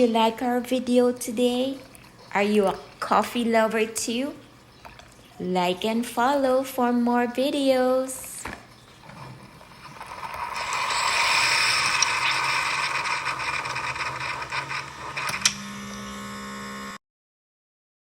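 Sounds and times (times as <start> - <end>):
coffee maker brewing: 8.5 - 17.0.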